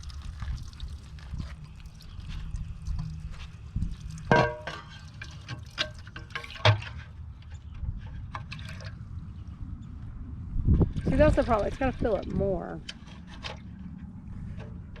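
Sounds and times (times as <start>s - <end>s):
water running from valve: 0.0s - 6.7s.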